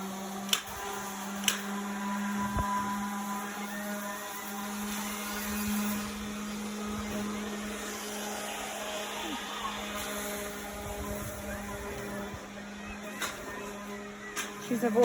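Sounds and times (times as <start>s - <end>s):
small motor humming: 0.0s - 15.0s
sharp clicks: 0.4s - 0.8s, 1.4s - 1.7s.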